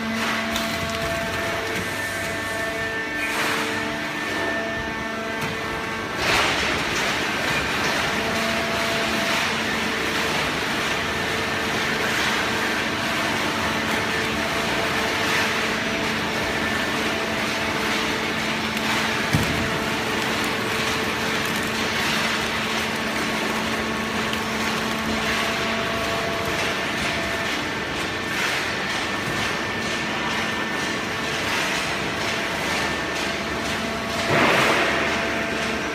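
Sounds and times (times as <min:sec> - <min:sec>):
baling press motor humming: 0:00.0 - 0:30.7.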